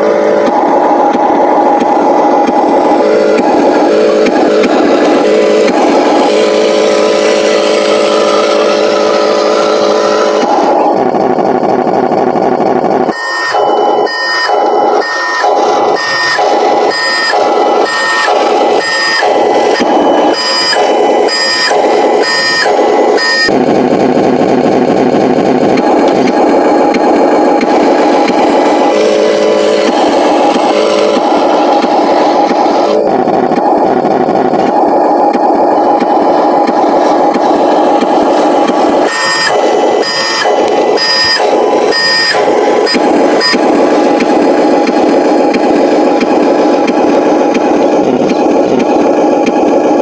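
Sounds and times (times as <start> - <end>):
simulated truck engine sound: 0.0 - 50.0
reversing beeper: 12.9 - 23.7, 25.8 - 45.1.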